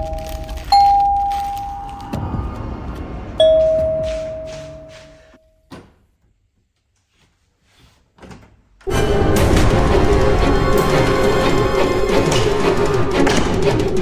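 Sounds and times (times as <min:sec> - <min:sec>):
doorbell chime: 0:00.0 - 0:02.5, 0:03.4 - 0:05.6
loud music: 0:08.9 - 0:14.0.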